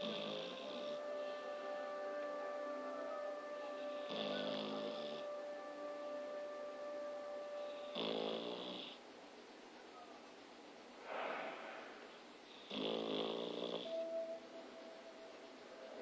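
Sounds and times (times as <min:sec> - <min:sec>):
dog snoring: 0:00.0 - 0:01.6, 0:03.1 - 0:05.5, 0:07.6 - 0:09.0, 0:12.5 - 0:14.1.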